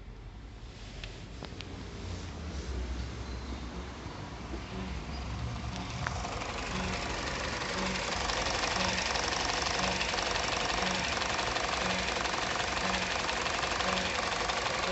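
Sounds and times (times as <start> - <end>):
car engine running: 4.7 - 14.9
rhythmic rubbing noise: 6.2 - 14.9.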